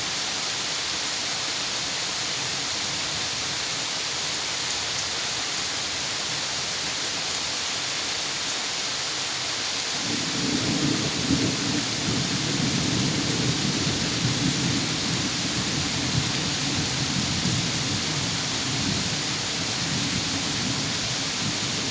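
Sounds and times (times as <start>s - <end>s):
steady rain falling: 0.0s - 21.9s
low rumble of thunder: 10.0s - 21.9s.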